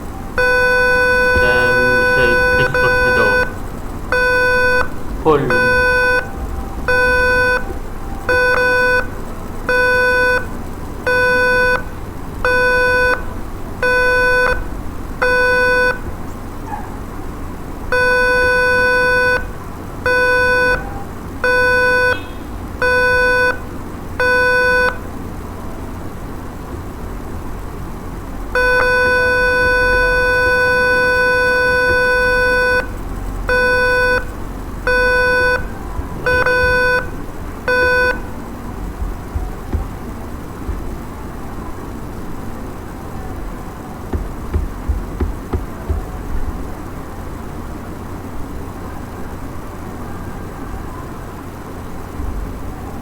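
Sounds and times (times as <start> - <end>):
long steady buzzer tone: 0.0 - 16.2, 17.8 - 27.5, 28.2 - 41.7, 43.4 - 46.7
electronic buzzer beeping: 0.4 - 10.5, 11.1 - 11.9, 21.4 - 23.6, 28.6 - 32.9, 34.9 - 38.3.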